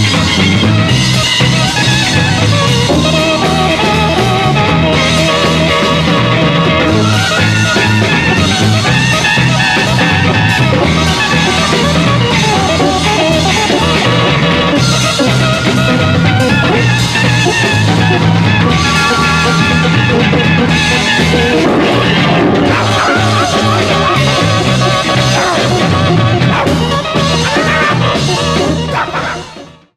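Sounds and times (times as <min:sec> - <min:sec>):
rock band playing: 0:00.0 - 0:29.9.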